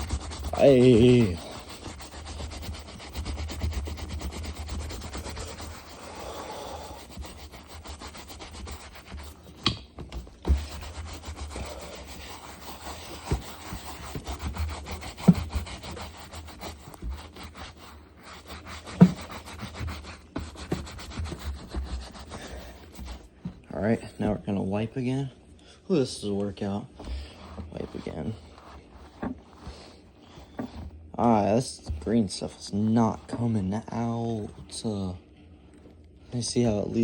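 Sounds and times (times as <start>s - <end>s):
brush scrubbing leather glove: 0.0s - 24.0s, 26.2s - 34.3s.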